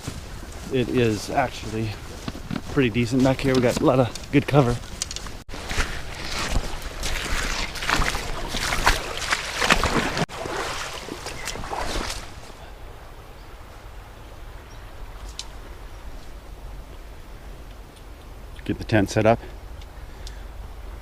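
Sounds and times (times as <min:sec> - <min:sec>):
crunching in dry leaves: 0:00.0 - 0:12.6.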